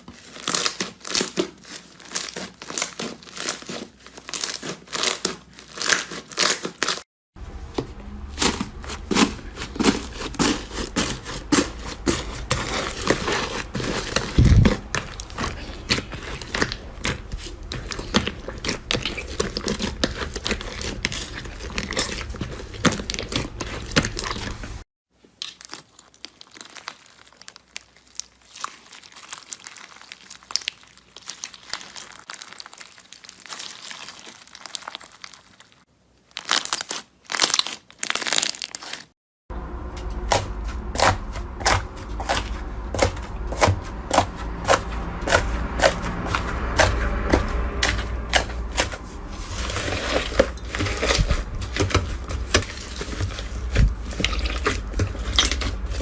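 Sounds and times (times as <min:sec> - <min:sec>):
slime squishing and popping: 0:49.7 - 0:56.0.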